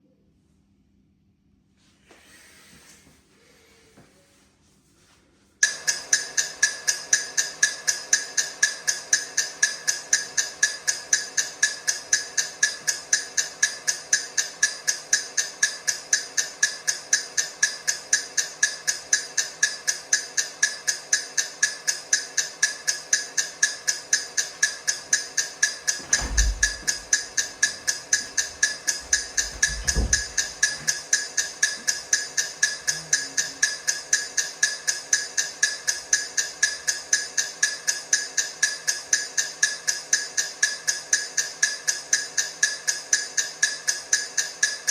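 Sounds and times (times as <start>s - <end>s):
low rumbles: 26.0s - 30.8s.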